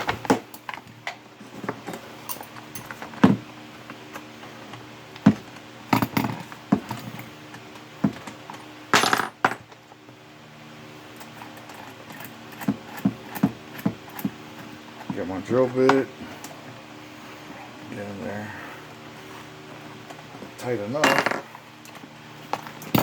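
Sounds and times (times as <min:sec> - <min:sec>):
metal parts clattering: 0:22.8 - 0:23.0
metal tools clinking: 0:22.8 - 0:23.0.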